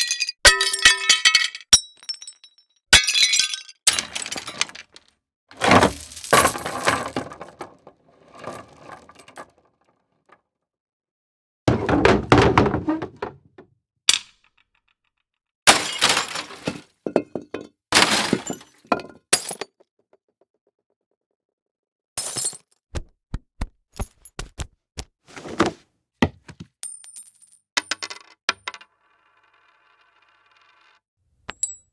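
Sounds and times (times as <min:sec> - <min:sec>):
clinking debris: 0:15.7 - 0:19.6.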